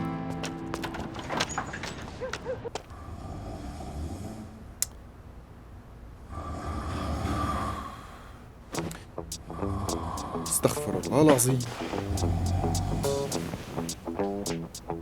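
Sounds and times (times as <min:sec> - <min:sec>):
man snoring: 0:06.3 - 0:08.3, 0:09.4 - 0:10.8, 0:11.5 - 0:13.2.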